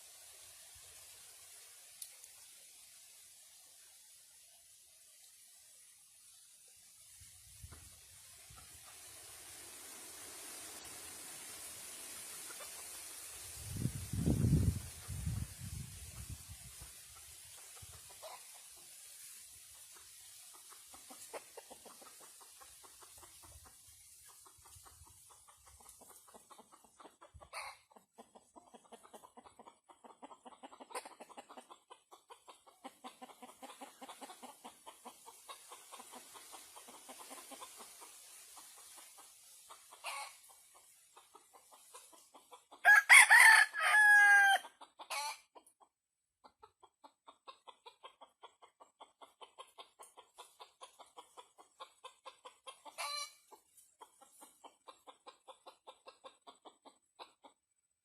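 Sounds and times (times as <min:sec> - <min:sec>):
rooster clucking softly: 0:12.0 - 0:57.8
rooster crowing: 0:42.8 - 0:44.6.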